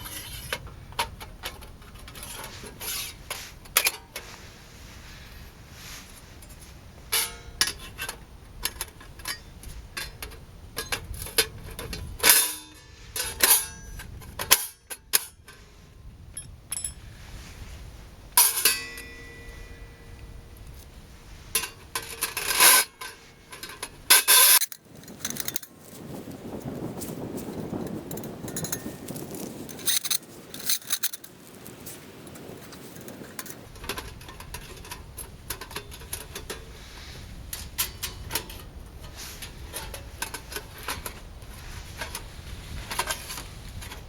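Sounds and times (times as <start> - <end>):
sheet metal clinks and knocks: 7.1 - 15.6, 16.4 - 17.0, 18.4 - 20.1, 21.6 - 25.7, 28.1 - 29.0.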